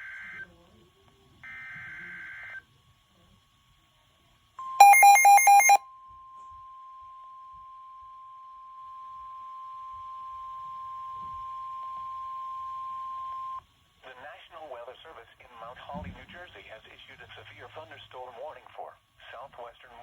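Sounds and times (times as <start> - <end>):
loud beeps: 4.7 - 5.8
single-tone alert: 4.8 - 5.8.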